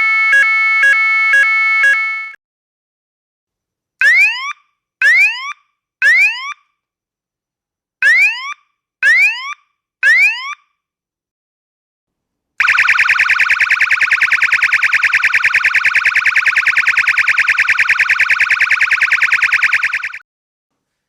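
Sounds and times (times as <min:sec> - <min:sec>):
siren fast warble: 0:00.0 - 0:02.4, 0:12.6 - 0:20.2.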